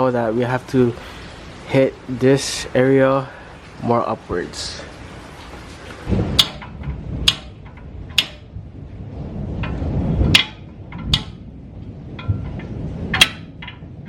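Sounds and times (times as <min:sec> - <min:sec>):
hammer striking steel: 0:06.4 - 0:08.6, 0:10.3 - 0:11.4.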